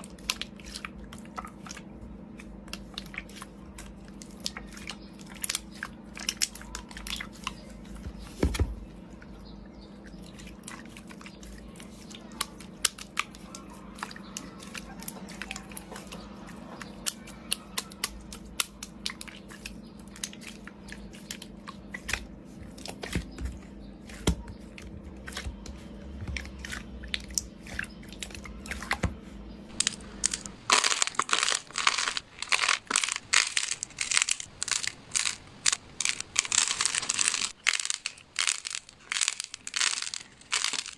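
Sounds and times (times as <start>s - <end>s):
faint steady hum: 0.0s - 40.9s
slime crackling and popping: 29.7s - 40.9s
small clicks and pops: 29.7s - 40.9s.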